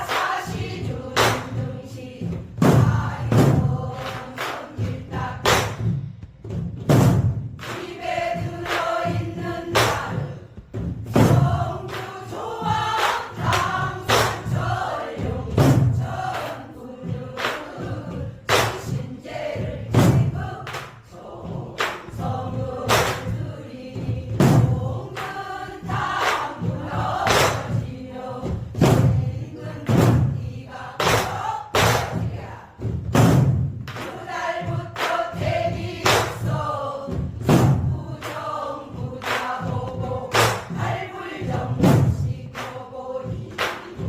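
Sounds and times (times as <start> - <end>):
barrel drum strokes: 0.0 - 20.8.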